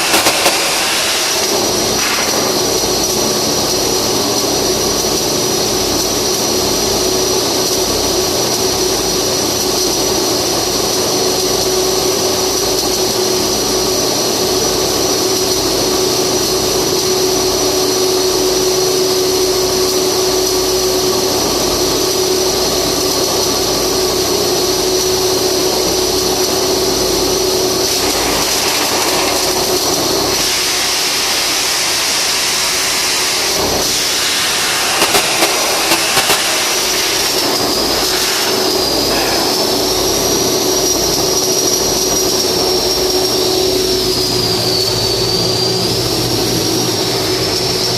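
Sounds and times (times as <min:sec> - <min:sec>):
welding hiss: 0:00.0 - 0:09.3, 0:10.2 - 0:47.9
droning hum: 0:23.5 - 0:31.7, 0:33.4 - 0:47.9.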